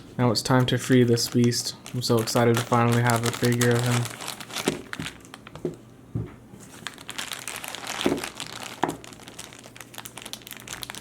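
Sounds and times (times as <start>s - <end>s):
plastic packaging crinkling: 0.4s - 5.8s, 6.6s - 11.0s.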